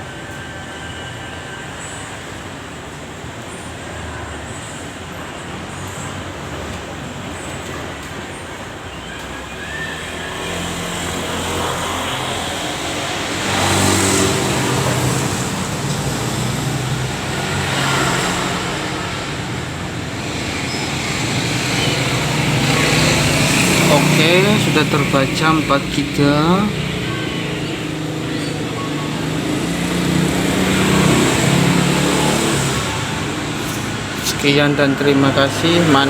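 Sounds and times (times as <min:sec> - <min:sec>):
passing motor vehicles: 0:00.0 - 0:36.0
louder vehicle passing by: 0:09.4 - 0:36.0.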